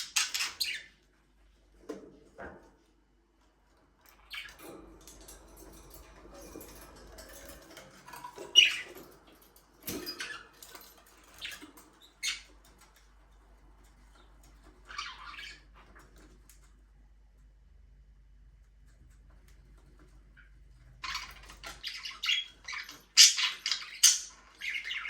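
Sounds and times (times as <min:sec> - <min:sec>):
budgerigars chirping: 0:00.0 - 0:00.9, 0:21.0 - 0:25.0.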